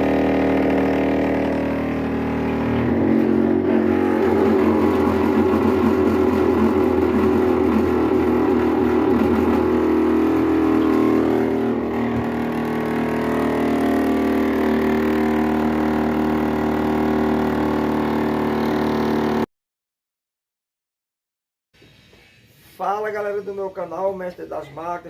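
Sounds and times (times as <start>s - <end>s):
washing machine buzzing hum: 0.0s - 19.4s.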